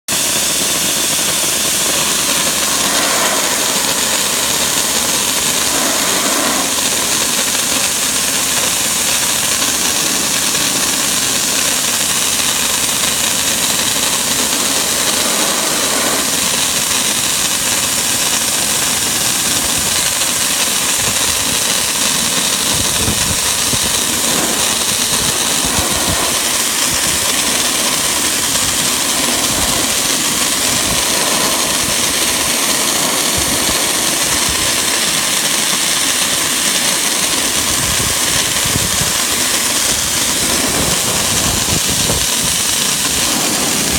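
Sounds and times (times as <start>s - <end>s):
dry ice blasting hiss: 0.1s - 43.9s
low rumbling: 1.6s - 34.7s.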